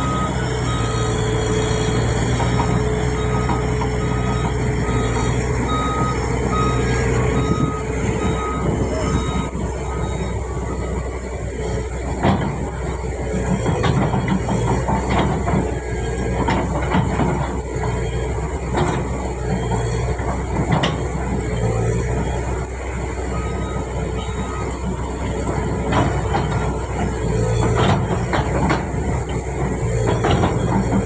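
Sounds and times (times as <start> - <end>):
reversing beeper: 0.0 - 11.9, 21.6 - 25.5
diesel engine running: 0.0 - 31.0.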